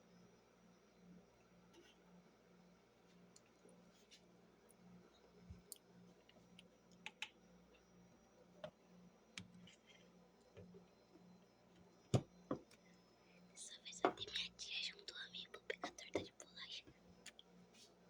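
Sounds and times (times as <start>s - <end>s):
faint low hum: 0.0s - 18.0s
faint clicks and taps: 5.4s - 7.8s, 9.4s - 12.8s, 13.9s - 14.5s, 15.8s - 17.5s.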